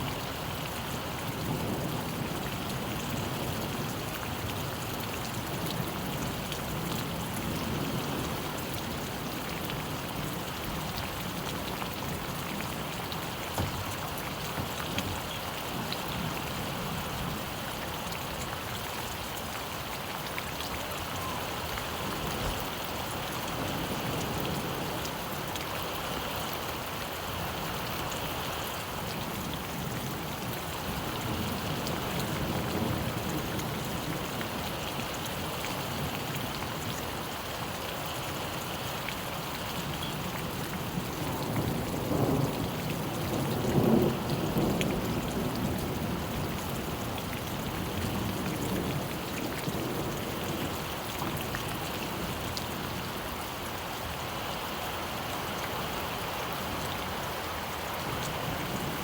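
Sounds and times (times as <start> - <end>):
steady rain falling: 0.0 - 59.0
raindrop taps: 13.1 - 15.5.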